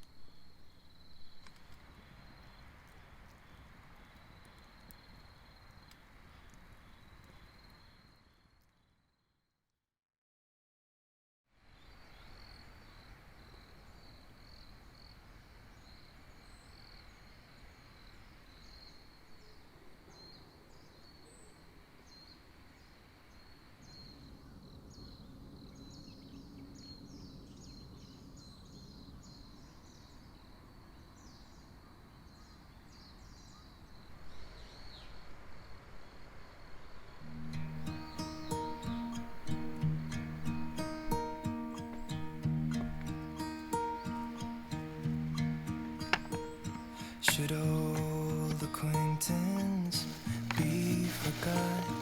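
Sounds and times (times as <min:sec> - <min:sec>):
small birds chirping: 0:00.0 - 0:09.2, 0:37.0 - 0:52.0.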